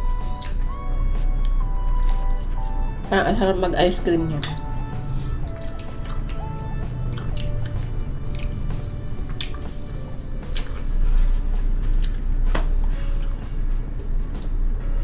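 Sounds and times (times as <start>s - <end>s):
light background music: 0.0s - 15.0s
wet chewing with mouth clicks: 4.4s - 14.9s.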